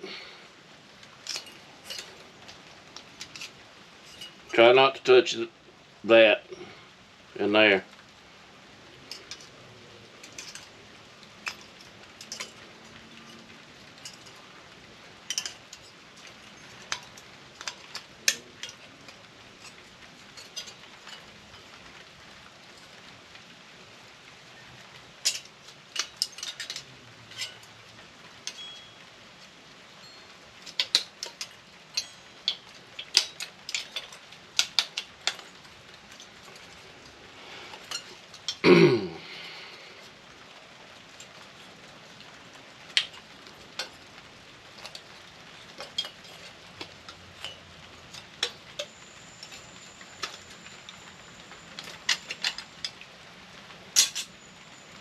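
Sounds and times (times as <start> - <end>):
faint hiss: 0.0 - 55.0
metallic clicks of hand tools: 1.2 - 4.4, 15.3 - 21.4, 28.4 - 29.0, 30.0 - 36.8, 42.9 - 44.1, 44.7 - 53.0, 54.0 - 54.4.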